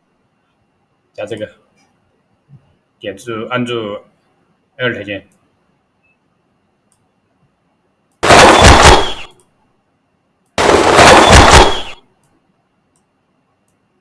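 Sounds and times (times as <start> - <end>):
cinematic impact blast: 8.2 - 9.3, 10.6 - 12.0.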